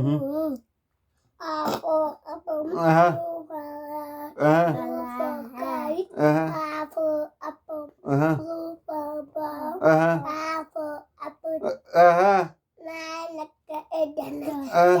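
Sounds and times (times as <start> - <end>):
young children singing: 4.4 - 6.9.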